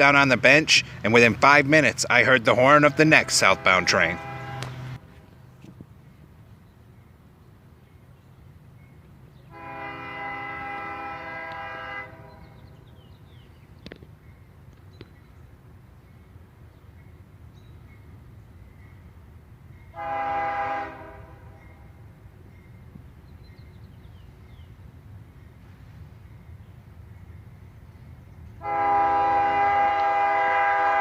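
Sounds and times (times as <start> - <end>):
locomotive air horn blasts: 2.5 - 5.0, 9.5 - 12.6, 19.9 - 21.6, 28.6 - 31.0.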